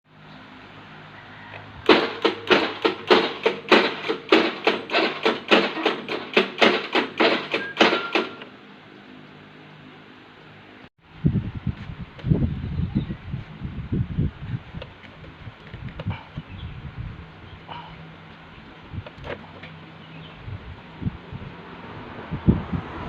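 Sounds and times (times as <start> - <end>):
scooter starter rapid clicking: 1.8 - 8.5.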